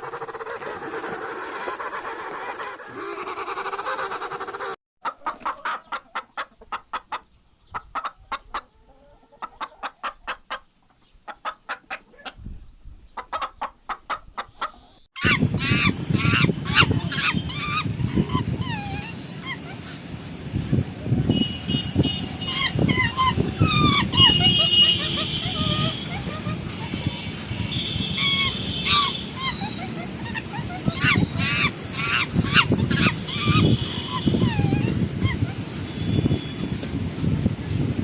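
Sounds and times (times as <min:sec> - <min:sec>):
animal calls: 0:00.0 - 0:07.1, 0:13.2 - 0:20.0, 0:22.4 - 0:35.6.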